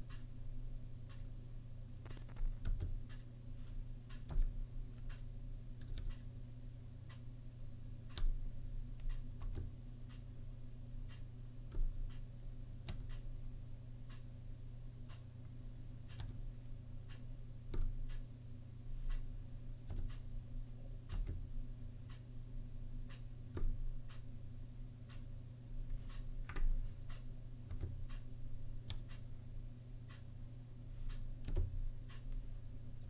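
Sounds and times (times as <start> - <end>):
keyboard typing clicks: 2.0 - 3.0, 4.1 - 5.2, 5.8 - 6.2, 8.1 - 8.4, 9.0 - 9.8, 11.7 - 12.2, 12.8 - 13.2, 16.1 - 16.4, 17.7 - 18.2, 19.8 - 20.3, 21.1 - 21.5, 25.9 - 28.2, 28.8 - 29.2, 31.1 - 32.4.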